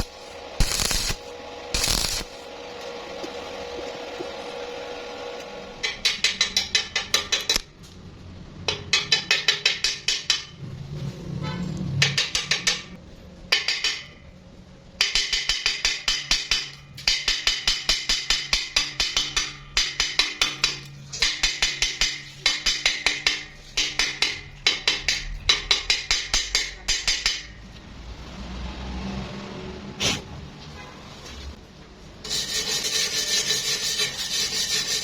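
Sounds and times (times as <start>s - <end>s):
hammer striking steel: 0.0s - 2.5s, 5.8s - 7.7s, 8.7s - 10.6s, 12.0s - 14.3s, 15.0s - 27.6s.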